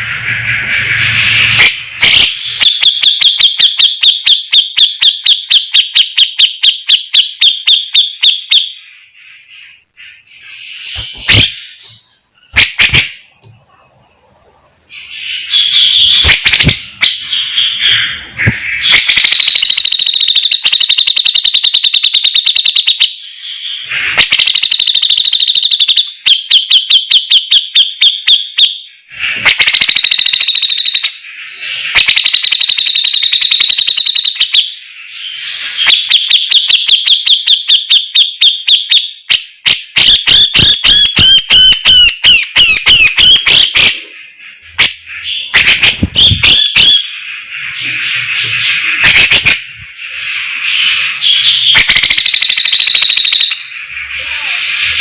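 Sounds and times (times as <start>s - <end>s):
bird singing chattering trills: 8.2s - 14.2s, 39.4s - 55.0s.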